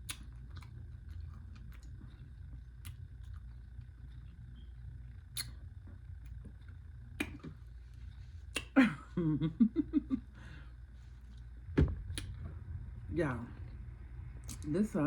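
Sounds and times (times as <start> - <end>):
mouth smacking clicks: 5.3 - 5.6, 7.2 - 7.5, 8.5 - 8.8.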